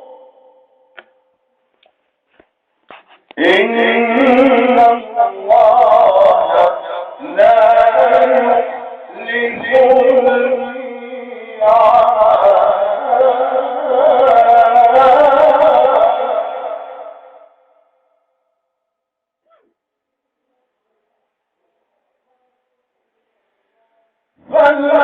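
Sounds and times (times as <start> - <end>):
man reciting melodic chant: 3.3 - 17.2, 24.4 - 25.0.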